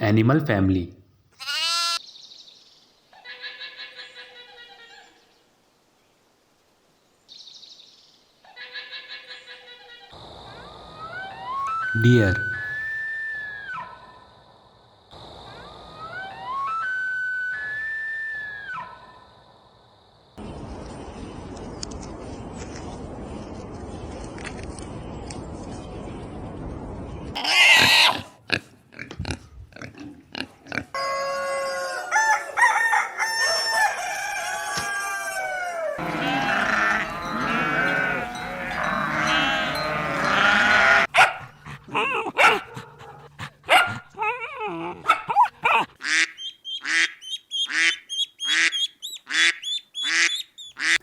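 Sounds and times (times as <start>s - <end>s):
animal calls: 11.1s - 14.2s, 27.4s - 28.4s, 35.2s - 51.0s.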